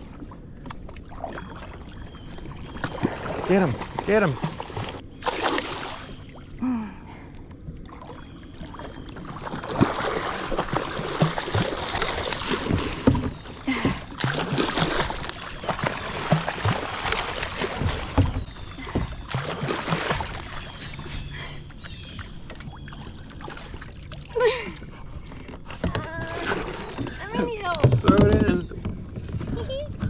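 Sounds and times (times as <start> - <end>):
water splashing: 0.0 - 6.6, 7.8 - 29.8
hollow knocks on a kayak: 27.0 - 29.7.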